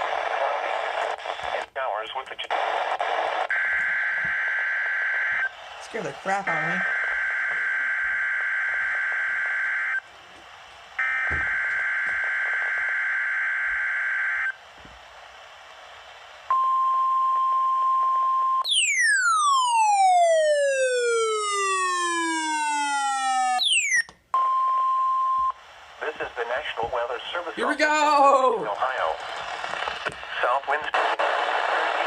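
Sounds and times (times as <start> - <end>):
steady warning alarm tone: 11.0 - 14.6, 18.6 - 24.1.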